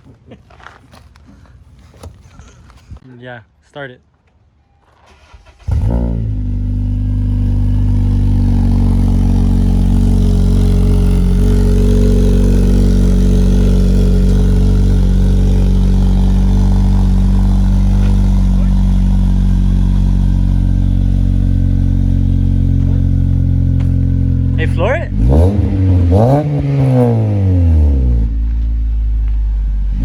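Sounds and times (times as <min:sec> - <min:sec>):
car engine starting and idling: 0:05.0 - 0:30.0.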